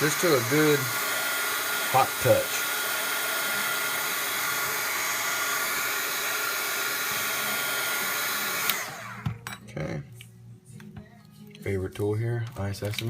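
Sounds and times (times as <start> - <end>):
hot-air blower hissing: 0.0 - 9.4.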